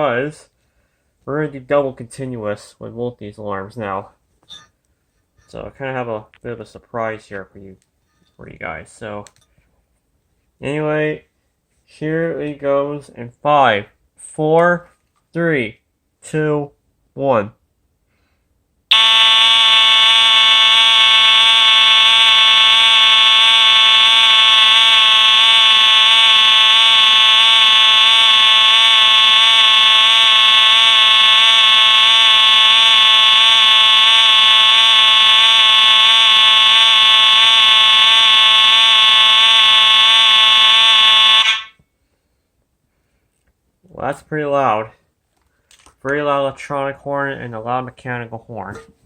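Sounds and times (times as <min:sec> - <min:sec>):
loud alarm horns blaring: 0:18.9 - 0:41.8.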